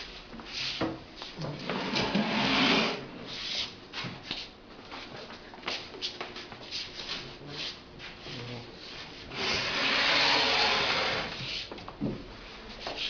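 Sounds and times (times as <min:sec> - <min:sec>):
wooden panel scraping on wood: 0:01.6 - 0:03.2, 0:09.4 - 0:11.5.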